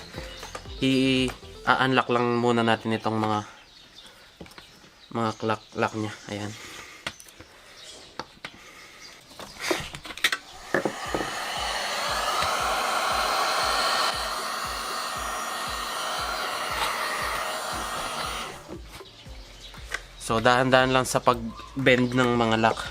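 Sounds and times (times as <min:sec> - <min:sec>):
heat gun blowing: 0:10.4 - 0:18.8.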